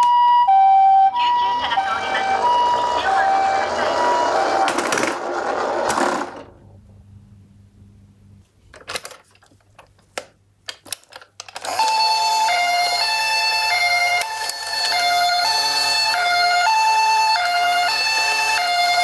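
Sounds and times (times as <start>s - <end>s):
electronic two-tone siren: 0.0s - 5.2s, 11.7s - 19.0s
toy car rattling: 1.7s - 6.6s.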